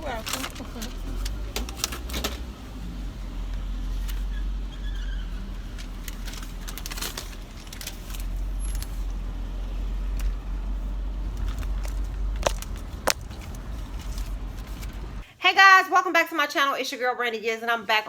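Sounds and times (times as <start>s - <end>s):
car engine and road rumble: 0.0s - 15.3s
light clicks and rattles: 11.2s - 15.2s.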